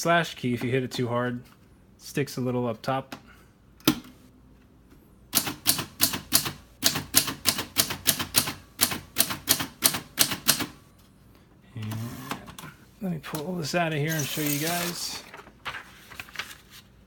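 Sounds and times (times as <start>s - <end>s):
typewriter key strikes: 5.4s - 10.8s.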